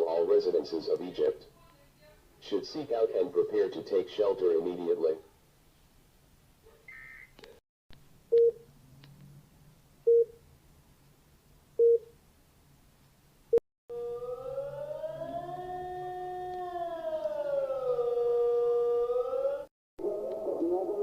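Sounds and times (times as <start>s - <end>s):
loud alert beeps: 6.9s - 7.3s
rising and falling siren tone: 13.9s - 21.0s.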